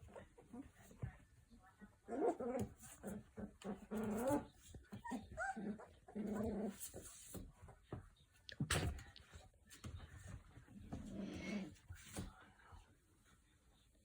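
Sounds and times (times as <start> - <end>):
puppies whining and growling: 2.1 - 7.1.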